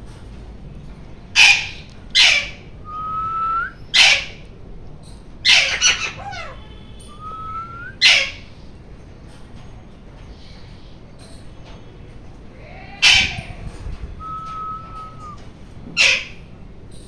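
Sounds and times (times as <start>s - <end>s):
parakeet rising whistles: 2.9s - 3.8s, 6.0s - 8.2s, 13.0s - 15.4s
parakeet screeching: 5.4s - 8.4s, 12.6s - 15.4s.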